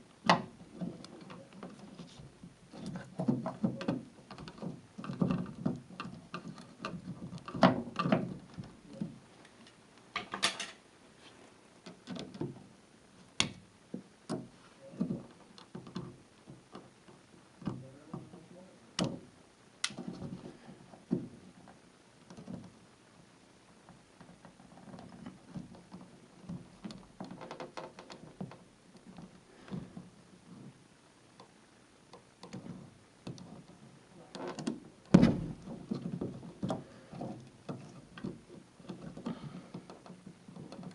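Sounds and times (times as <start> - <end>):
rustling: 0.0 - 40.9.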